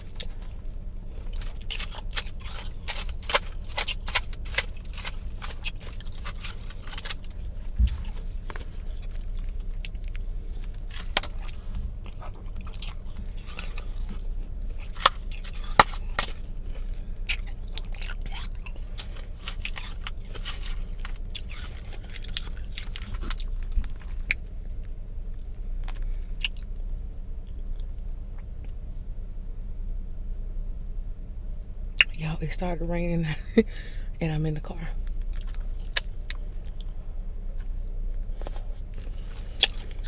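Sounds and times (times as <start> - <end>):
chewing and crunching ice: 0.0 - 28.9, 34.9 - 40.0
steady low hum: 0.0 - 40.0.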